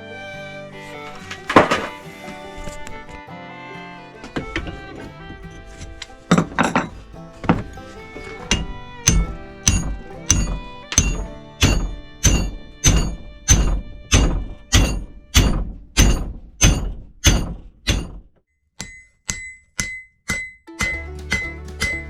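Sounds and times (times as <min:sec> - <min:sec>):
hammer blows ringing on anvil: 0:08.3 - 0:18.2, 0:18.8 - 0:22.0
light ringing hammer taps: 0:18.8 - 0:22.0.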